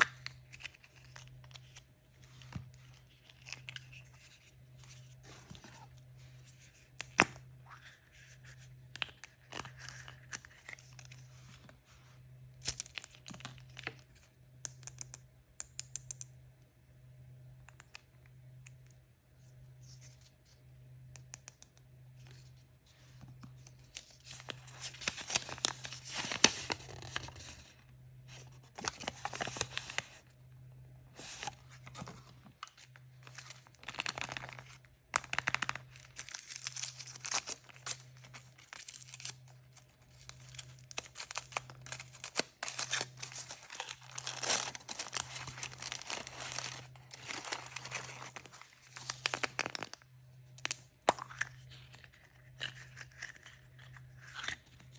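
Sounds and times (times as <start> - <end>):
plastic wrapping tearing and crinkling: 24.0 - 27.5, 33.2 - 50.0.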